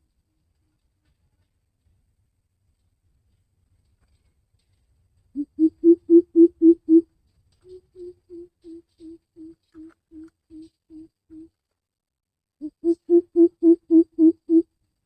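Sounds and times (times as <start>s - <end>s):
bird deep hooting call: 5.4s - 7.0s, 7.6s - 11.5s, 12.6s - 14.7s.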